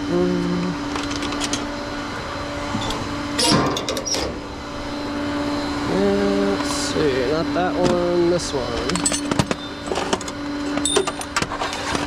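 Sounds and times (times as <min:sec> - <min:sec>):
hydraulic whine: 0:00.0 - 0:12.0
truck engine hum: 0:00.0 - 0:12.0
metal chains clanking: 0:08.8 - 0:10.2, 0:10.8 - 0:12.0.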